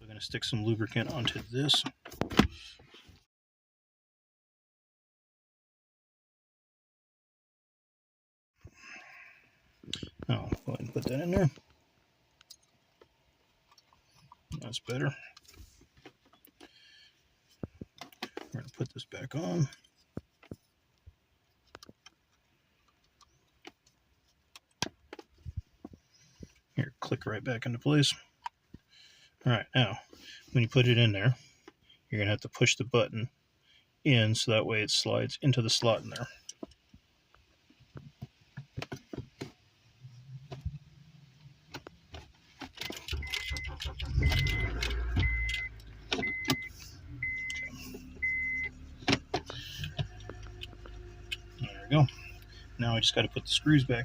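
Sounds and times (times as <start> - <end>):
car warning chime beeping: 43.1 - 49.0.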